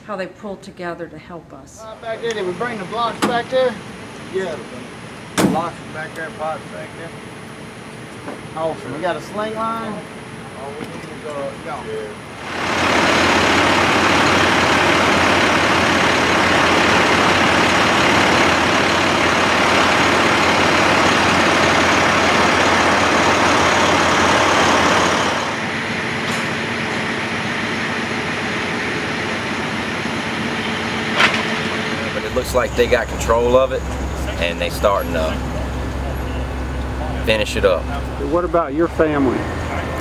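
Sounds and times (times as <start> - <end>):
truck engine revving: 2.0 - 40.0.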